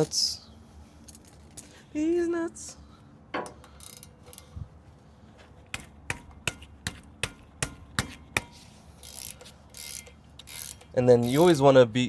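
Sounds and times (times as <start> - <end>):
ratchet wrench clicking: 3.6 - 4.5, 8.4 - 11.6.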